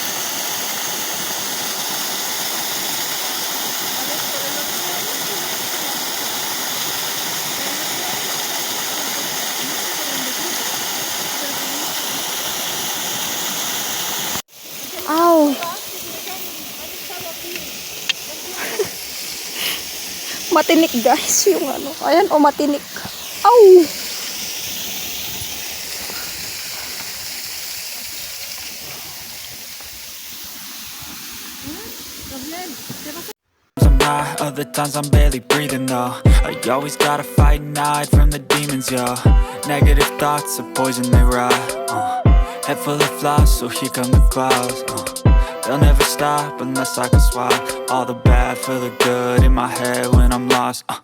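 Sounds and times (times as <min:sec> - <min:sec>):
waterfall rushing: 0:00.0 - 0:33.4.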